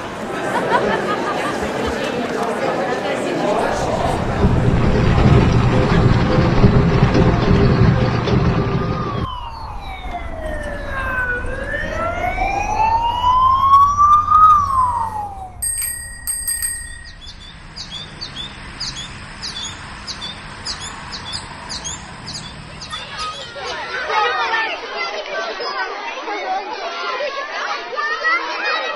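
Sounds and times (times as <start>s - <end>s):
traffic rumble: 3.3s - 24.6s
siren wailing: 9.0s - 15.6s.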